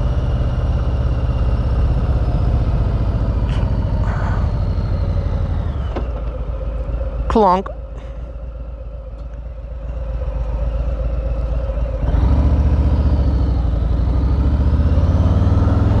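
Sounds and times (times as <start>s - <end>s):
motorcycle engine revving: 0.0s - 16.0s.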